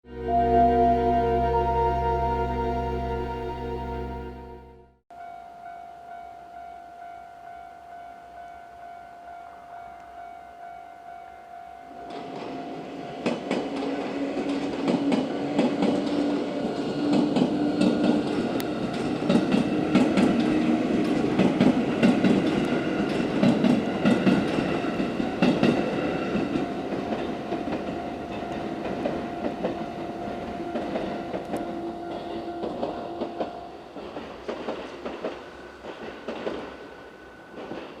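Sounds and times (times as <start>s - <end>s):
level crossing warning bell: 0.1s - 16.9s, 18.2s - 38.0s
electric train passing: 0.1s - 38.0s
wheels clacking over rail joints: 12.1s - 38.0s.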